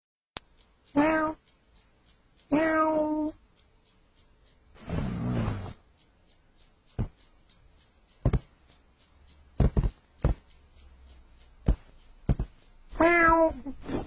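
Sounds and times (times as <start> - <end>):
sharp taps: 5.7 - 14.0.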